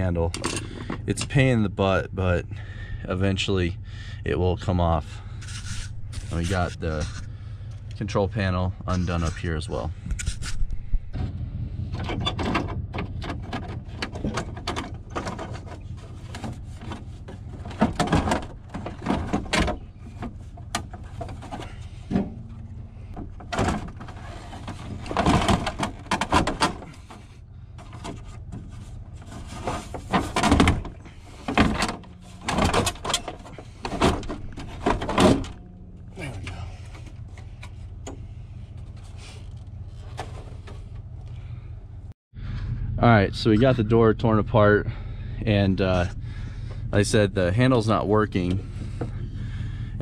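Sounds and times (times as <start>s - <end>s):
steady low hum: 0.0s - 50.0s
plastic door panel rattling: 12.0s - 22.4s, 23.1s - 27.2s, 29.2s - 35.7s.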